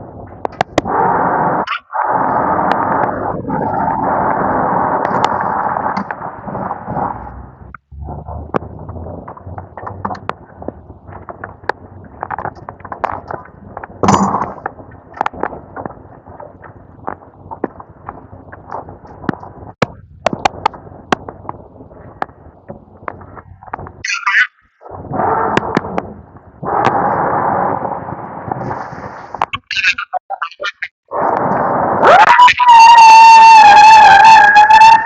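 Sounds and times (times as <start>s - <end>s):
sharp engine knocks and clicks: 7.7s - 24.0s.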